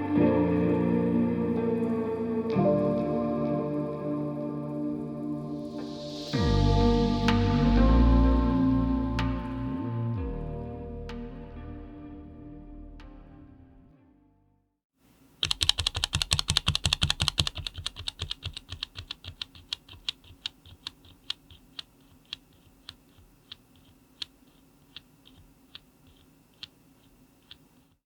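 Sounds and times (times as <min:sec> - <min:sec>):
typing on mechanical keyboard: 0:15.4 - 0:28.0.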